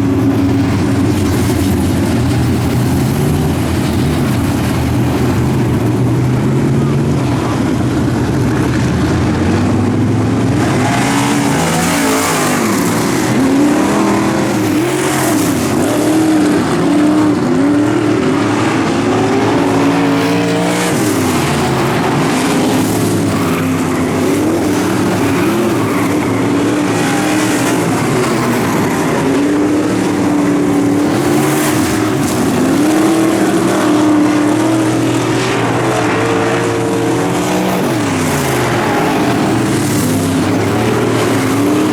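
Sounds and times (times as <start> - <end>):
race car engine revving: 0.0 - 41.9.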